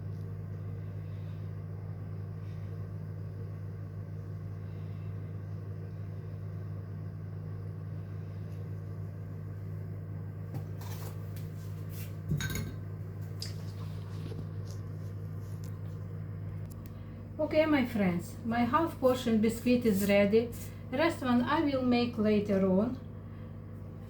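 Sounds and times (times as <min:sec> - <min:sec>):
kitchen appliance hum: 0:00.0 - 0:24.0
dishes clinking and clattering: 0:12.3 - 0:12.8.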